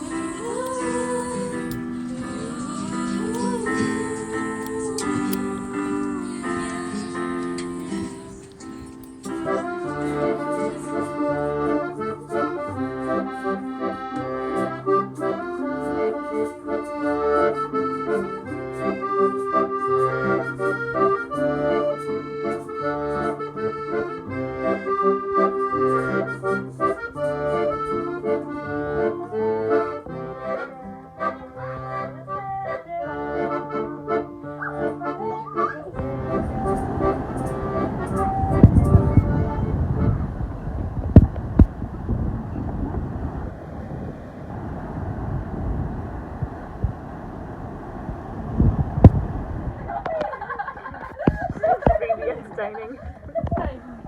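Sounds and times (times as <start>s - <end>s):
instrumental background music: 0.0s - 40.3s.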